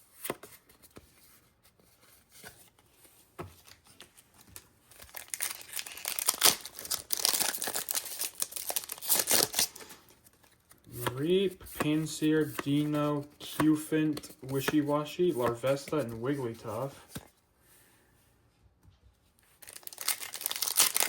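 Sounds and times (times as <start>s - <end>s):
foil wrapper tearing and crinkling: 4.4s - 10.1s, 19.6s - 21.0s.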